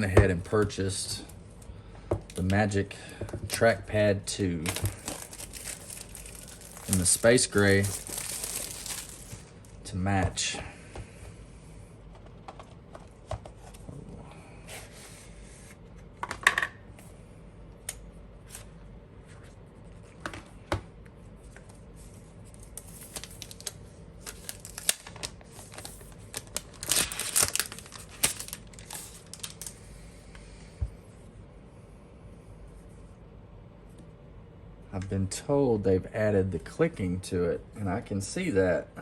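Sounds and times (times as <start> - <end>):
packaging tearing and rustling: 4.6 - 9.8, 22.5 - 29.8.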